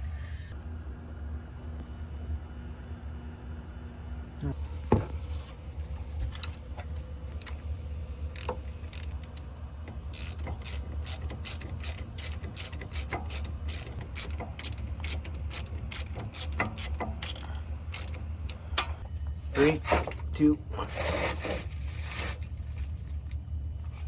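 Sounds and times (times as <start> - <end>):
steady low hum: 0.0 - 24.0
ratchet wrench clicking: 8.3 - 19.0.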